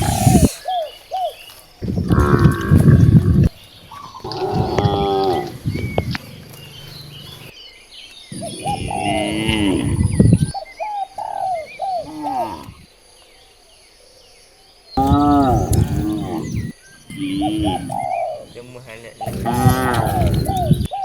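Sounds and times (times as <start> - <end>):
faint birds chirping: 0.0 - 21.0
cattle mooing: 2.1 - 3.5, 4.2 - 5.8, 15.0 - 18.1, 19.2 - 20.9.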